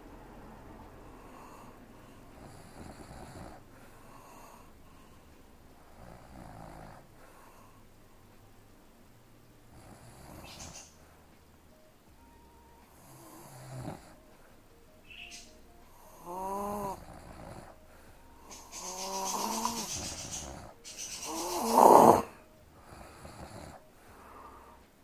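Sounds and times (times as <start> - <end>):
quiet breaths: 0.0 - 25.0
woman snoring: 1.0 - 5.2, 5.8 - 7.8, 9.7 - 11.0, 12.9 - 14.2, 15.9 - 24.8.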